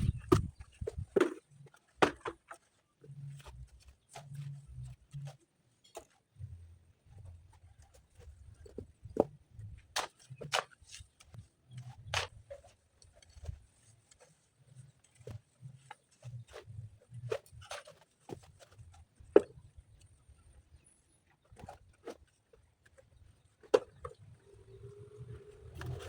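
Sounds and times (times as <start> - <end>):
stones and hand tools knocking: 0.0 - 2.6.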